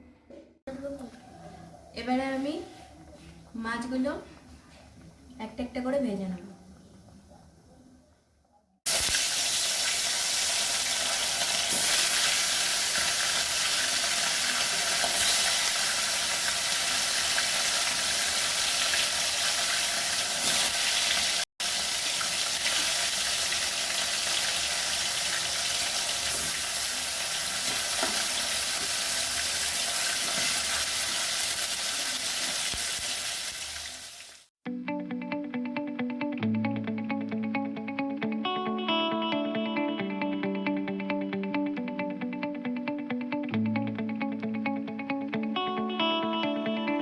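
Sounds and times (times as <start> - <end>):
fish sizzling in hot oil: 8.9 - 34.5.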